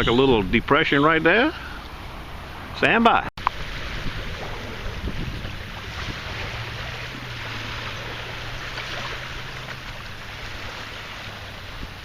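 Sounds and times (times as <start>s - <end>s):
water rushing: 0.0s - 12.0s
wind rushing: 3.5s - 8.5s.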